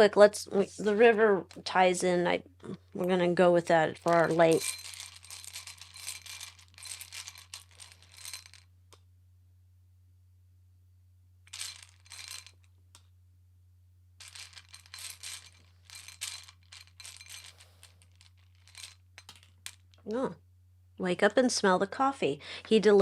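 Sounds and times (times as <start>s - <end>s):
cards rustling and clicking: 4.0s - 8.6s, 11.5s - 12.6s, 14.2s - 19.9s.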